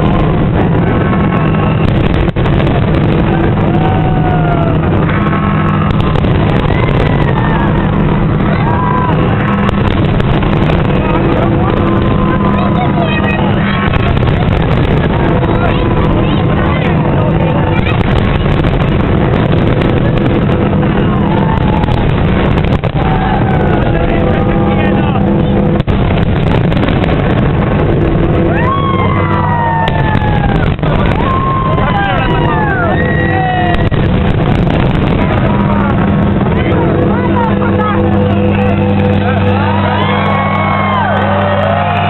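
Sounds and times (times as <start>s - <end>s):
crowd: 0.0s - 42.0s
fireworks bursting: 0.0s - 42.0s
firework whistles gliding down: 1.2s - 2.1s.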